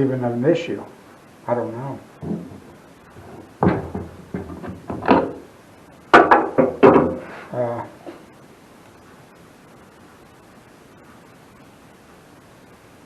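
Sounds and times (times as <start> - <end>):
man muttering: 7.4 - 8.3.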